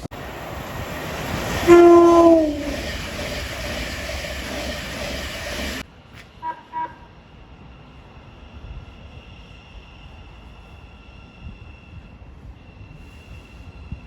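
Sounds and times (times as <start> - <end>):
train passing at speed: 0.0 - 14.0
train horn toots: 1.5 - 2.9, 6.4 - 7.1.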